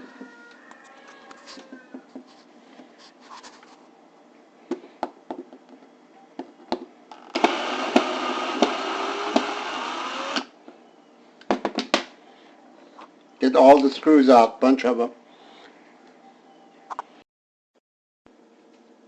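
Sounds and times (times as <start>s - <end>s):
power drill backing out screw: 7.2s - 10.5s.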